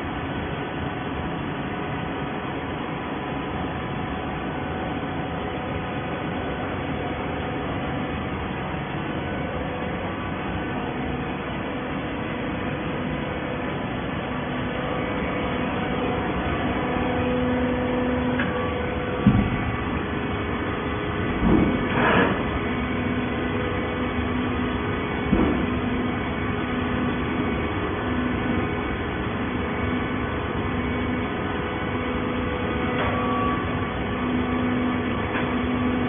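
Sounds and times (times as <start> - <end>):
baling machine humming: 0.0 - 36.0
machine knock: 19.2 - 19.7, 21.4 - 22.4.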